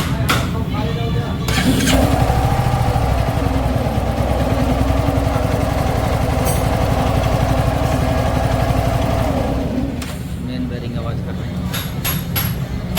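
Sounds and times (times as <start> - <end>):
motorcycle engine idling: 1.4 - 11.4
man talking: 10.4 - 11.9.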